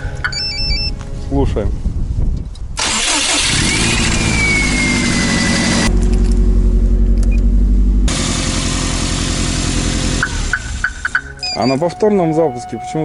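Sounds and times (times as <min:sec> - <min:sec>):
car engine running at raised revs: 0:03.5 - 0:10.9
whine: 0:04.0 - 0:13.0.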